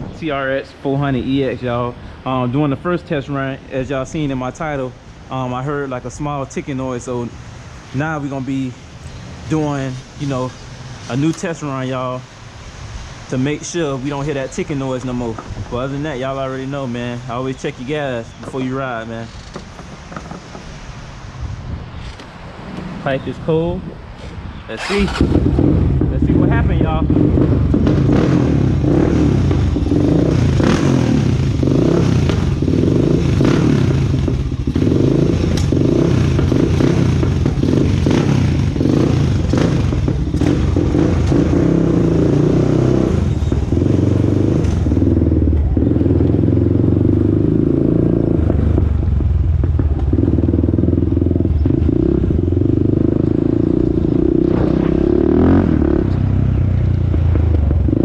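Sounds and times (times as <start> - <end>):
atv engine revving: 24.7 - 58.0.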